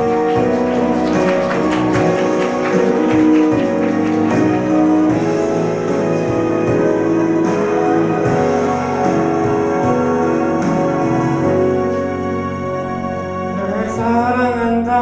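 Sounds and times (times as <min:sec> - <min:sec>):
person singing: 0:00.0 - 0:12.2.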